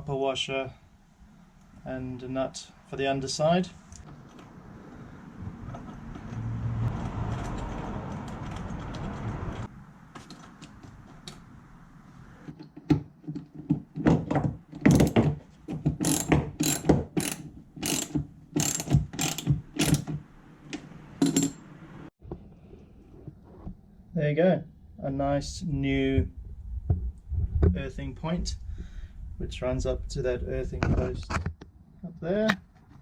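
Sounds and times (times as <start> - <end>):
steady mechanical noise: 14.8 - 22.1
ratchet wrench clicking: 16.0 - 20.1, 21.2 - 21.6.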